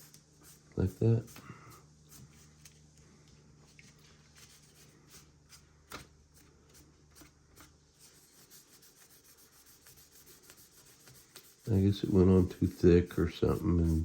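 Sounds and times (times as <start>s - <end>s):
low steady hum: 0.0s - 14.0s
sanding sponge rubbing and scratching: 8.0s - 14.0s.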